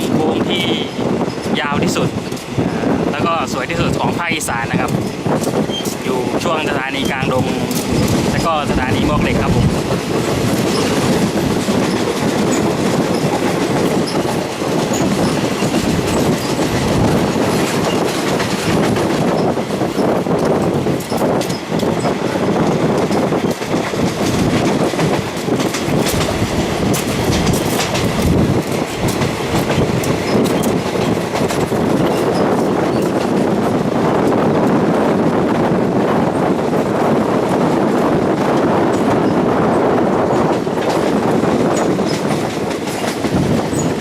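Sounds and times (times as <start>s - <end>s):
train carriage rumble: 0.0s - 44.0s
wheels clattering over rail joints: 4.7s - 34.7s, 40.2s - 44.0s.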